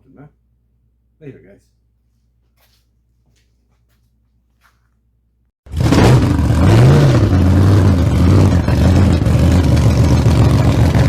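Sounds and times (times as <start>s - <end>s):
loud engine revving: 5.7s - 11.0s.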